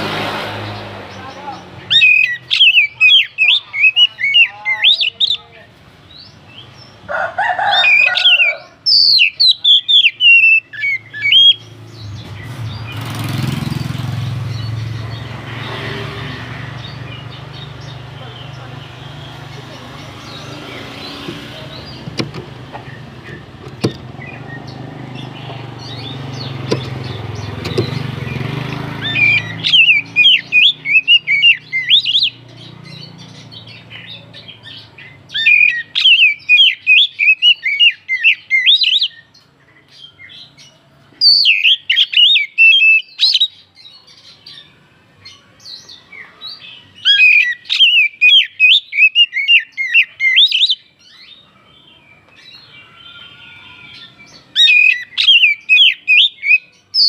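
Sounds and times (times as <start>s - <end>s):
bird chirping and whistling: 1.8s - 5.4s, 7.8s - 13.1s, 22.8s - 39.3s, 41.2s - 43.6s, 47.0s - 51.4s, 52.4s - 57.0s.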